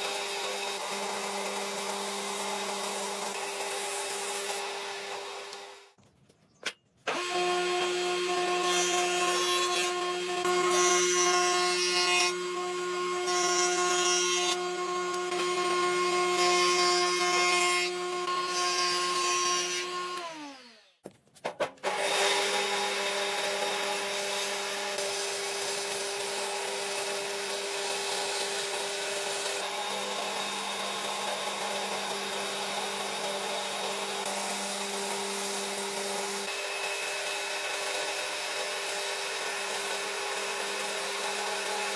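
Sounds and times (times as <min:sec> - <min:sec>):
power tool cutting wood: 0:00.0 - 0:06.0, 0:07.1 - 0:21.0, 0:21.7 - 0:41.9.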